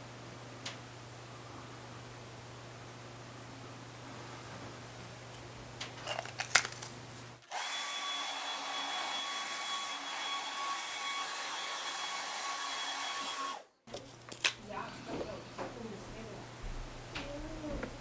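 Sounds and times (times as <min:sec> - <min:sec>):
low steady hum: 0:13.9 - 0:18.0.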